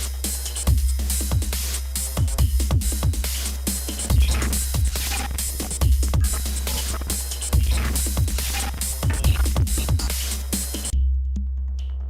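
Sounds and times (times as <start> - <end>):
pitch-dropping kick drums: 0.0 - 11.5
deep bass: 0.0 - 12.0
electronic music: 3.4 - 11.0.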